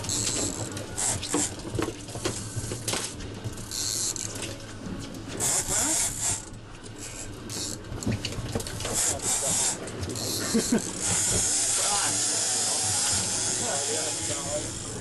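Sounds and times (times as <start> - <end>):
fishing reel ratcheting: 0.1 - 1.6, 3.7 - 4.4, 5.4 - 7.8, 9.0 - 14.9.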